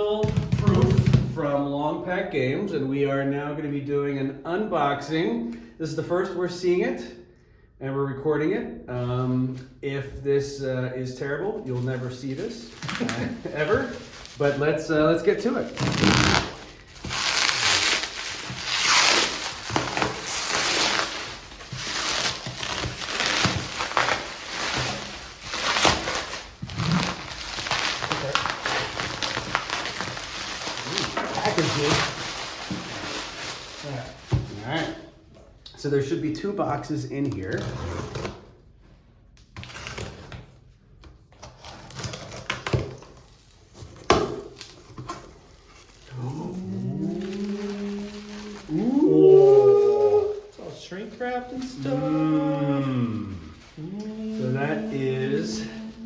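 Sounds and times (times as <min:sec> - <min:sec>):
cardboard rustling and scraping: 0:15.6 - 0:34.7.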